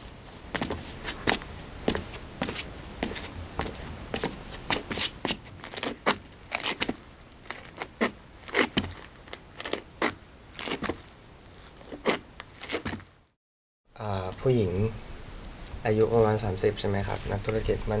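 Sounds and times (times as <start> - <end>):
footsteps heel and toe taps: 0.3 - 11.1, 11.8 - 13.1.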